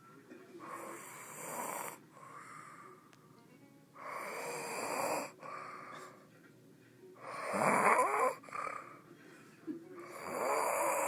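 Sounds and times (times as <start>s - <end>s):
person snoring: 0.6s - 2.9s, 4.0s - 5.8s, 7.2s - 9.0s, 10.0s - 11.0s
soft breathing: 0.6s - 3.4s, 5.2s - 6.4s, 8.3s - 10.4s.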